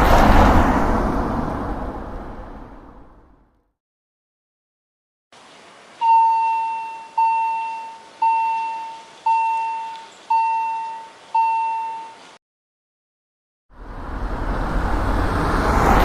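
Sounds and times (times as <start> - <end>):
level crossing bell ringing: 6.0 - 12.2.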